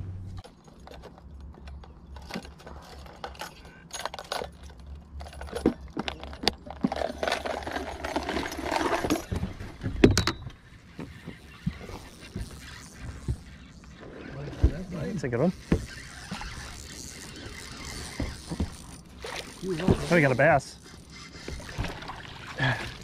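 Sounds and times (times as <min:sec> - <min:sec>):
fishing gear jingling: 0:00.4 - 0:10.4.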